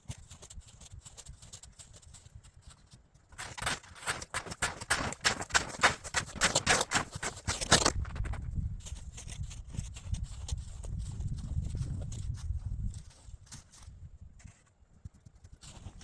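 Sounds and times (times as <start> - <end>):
snow crunching and scraping: 3.4 - 14.7.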